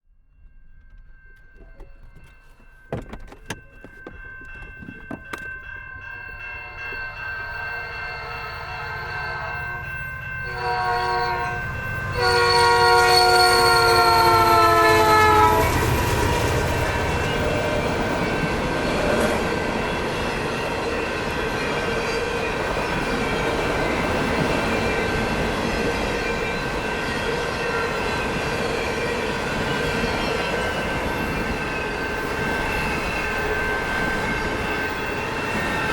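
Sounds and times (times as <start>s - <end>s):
train air horn: 10.5s - 17.2s.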